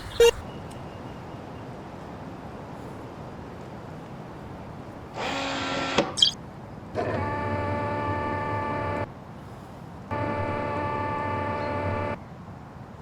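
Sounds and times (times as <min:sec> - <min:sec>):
faint background noise: 0:00.0 - 0:05.2
horn blasts: 0:10.1 - 0:12.2.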